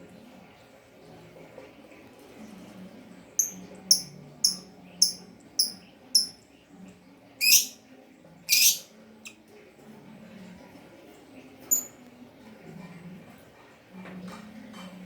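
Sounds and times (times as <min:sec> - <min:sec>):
lovebird chirping: 0:03.4 - 0:06.4, 0:07.4 - 0:07.8, 0:08.5 - 0:08.9, 0:11.7 - 0:11.9
lovebird screeching: 0:07.4 - 0:07.8, 0:08.5 - 0:08.8.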